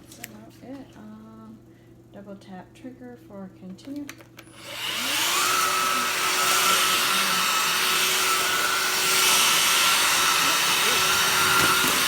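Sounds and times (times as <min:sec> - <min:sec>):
cordless vacuum motor whine: 0:04.4 - 0:12.0.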